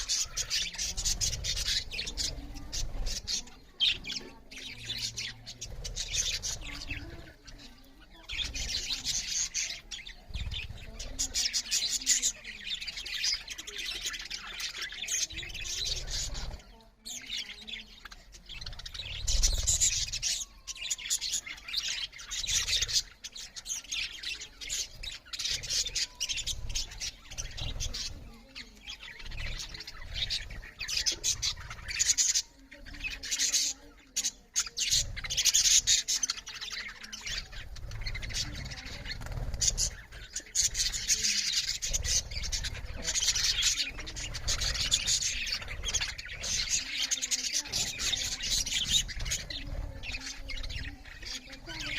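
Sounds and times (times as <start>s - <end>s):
budgerigars chattering: 0.0s - 51.9s.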